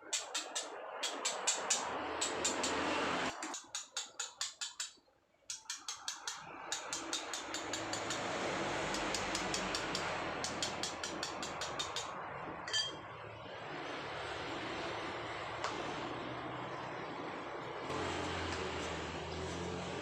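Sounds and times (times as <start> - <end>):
chisel tapping on stone: 0.2 - 8.3, 8.9 - 12.1
ringing clink: 12.7 - 13.0.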